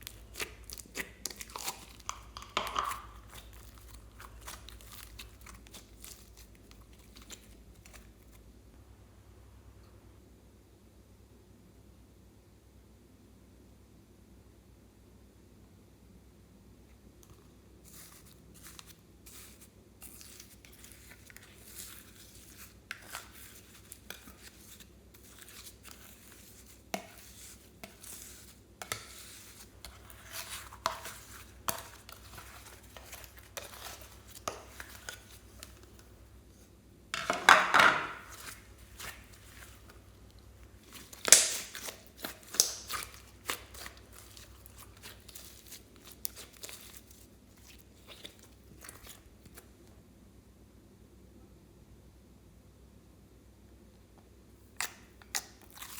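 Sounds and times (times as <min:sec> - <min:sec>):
slime crunching: 0:00.0 - 0:08.4, 0:17.8 - 0:49.7, 0:54.8 - 0:55.9
slime squishing and crackling: 0:00.0 - 0:08.4, 0:17.8 - 0:36.6, 0:37.6 - 0:49.7, 0:54.8 - 0:55.9.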